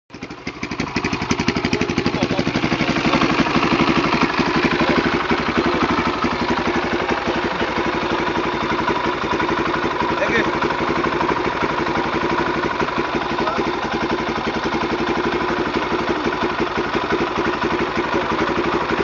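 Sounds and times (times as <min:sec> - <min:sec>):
motorcycle engine idling: 0:00.1 - 0:19.0.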